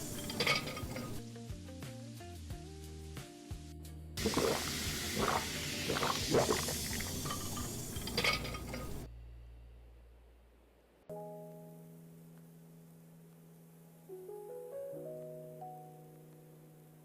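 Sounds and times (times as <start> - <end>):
clinks: 0.0 - 1.2, 7.0 - 9.1
liquid hissing and splashing: 0.0 - 1.2, 4.2 - 9.1
soft piano music: 11.1 - 17.0.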